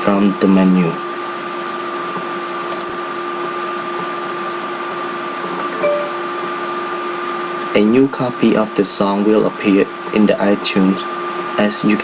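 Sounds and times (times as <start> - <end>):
high-pitched whine: 5.6 - 6.9.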